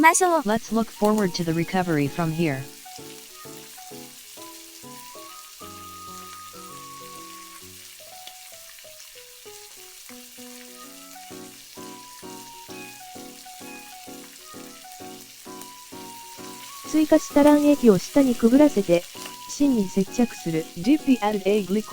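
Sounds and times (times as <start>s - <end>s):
light background music: 0.0s - 21.9s
egg sizzling in frying pan: 0.4s - 21.9s.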